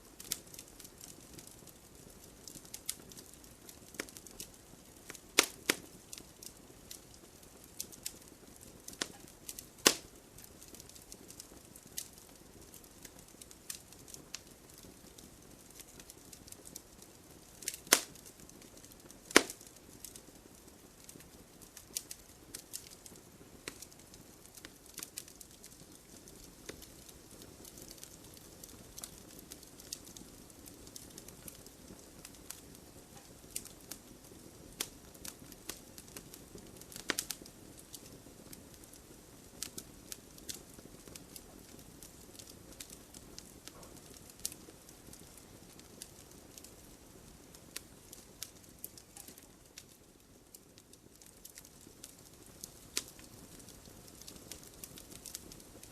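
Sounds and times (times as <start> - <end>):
campfire crackling and popping: 0.0 - 55.9
low hiss of burning fire: 0.0 - 55.9.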